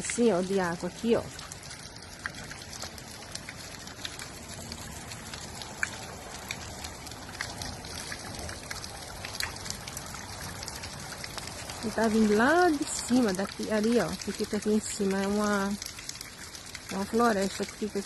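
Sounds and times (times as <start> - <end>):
water splashes: 0.0 - 18.0.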